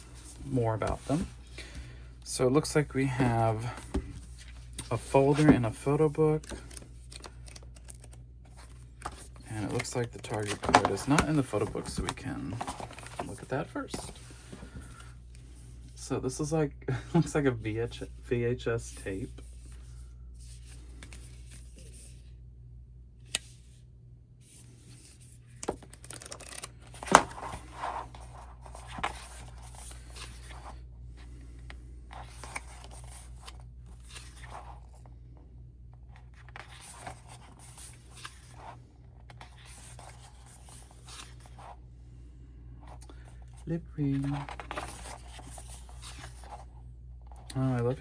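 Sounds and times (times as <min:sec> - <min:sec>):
pages turning: 0:00.0 - 0:01.8, 0:03.6 - 0:15.1, 0:24.5 - 0:30.8, 0:32.1 - 0:35.0, 0:36.1 - 0:41.8, 0:42.9 - 0:48.0
paper and cardboard rustling: 0:00.0 - 0:01.8, 0:03.1 - 0:15.5, 0:24.6 - 0:30.8, 0:32.1 - 0:35.0, 0:36.1 - 0:41.8, 0:42.9 - 0:48.0.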